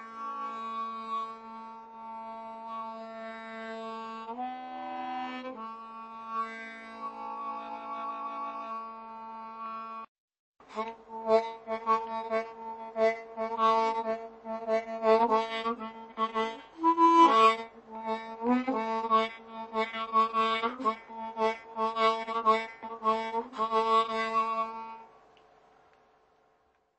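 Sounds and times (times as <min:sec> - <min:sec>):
harmonica chord: 0:00.0 - 0:10.1, 0:10.7 - 0:25.2.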